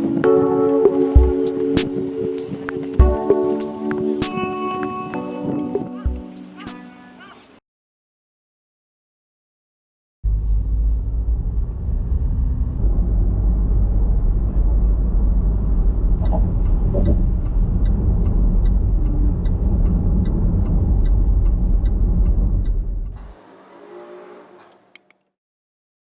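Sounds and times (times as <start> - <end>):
wind buffeting microphone: 14.3 - 23.2.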